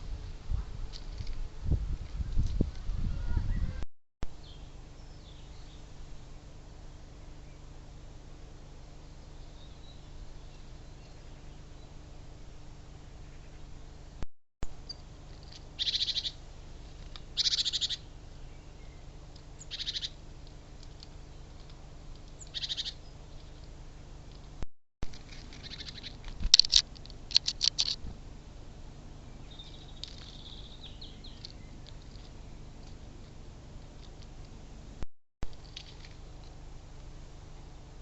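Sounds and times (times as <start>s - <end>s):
bird chirp: 4.4s - 5.9s, 9.0s - 12.0s, 15.8s - 16.4s, 17.2s - 20.2s, 22.3s - 23.8s, 25.5s - 26.2s, 29.2s - 32.7s
harsh buzzy bird calls: 15.7s - 16.4s, 17.2s - 20.2s, 22.4s - 23.7s, 25.5s - 26.2s.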